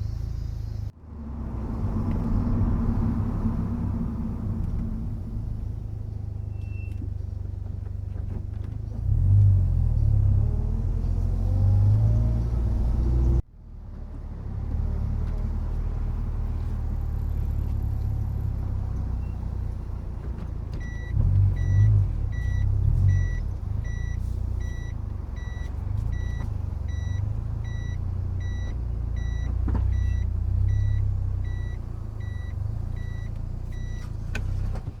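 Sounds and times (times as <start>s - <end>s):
car engine and road rumble: 0.0s - 35.0s
reverse warning beeping: 20.8s - 34.1s.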